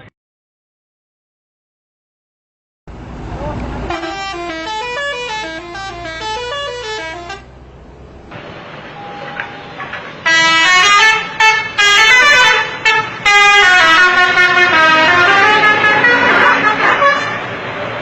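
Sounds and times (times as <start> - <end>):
bus musical horn: 3.6 - 7.6, 9.0 - 17.6.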